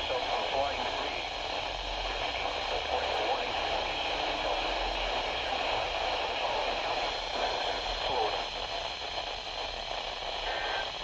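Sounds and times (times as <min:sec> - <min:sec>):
faint voice on radio: 0:00.0 - 0:08.6, 0:10.3 - 0:11.0
radio static hiss: 0:00.0 - 0:11.0.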